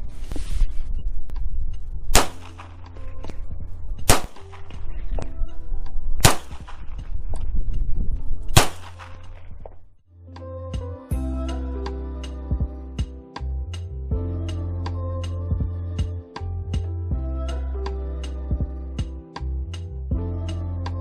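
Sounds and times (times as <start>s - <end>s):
steady low rumble: 0.0s - 10.0s, 11.1s - 20.8s
gunshots with echo: 2.1s - 2.8s, 4.1s - 4.7s, 6.2s - 6.8s, 8.6s - 9.2s.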